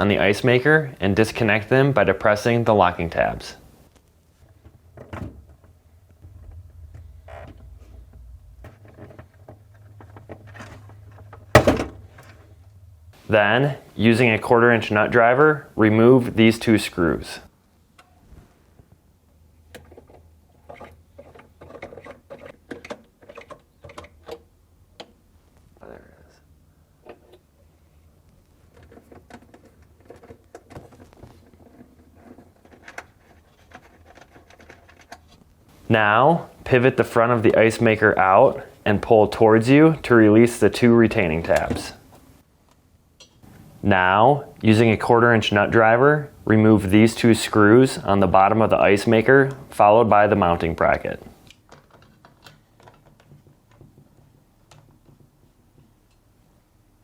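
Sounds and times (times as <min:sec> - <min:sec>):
low steady hum: 0:00.0 - 0:21.9
rustling: 0:03.7 - 0:13.3
plastic parts being handled: 0:28.2 - 0:35.5, 0:51.3 - 0:56.2.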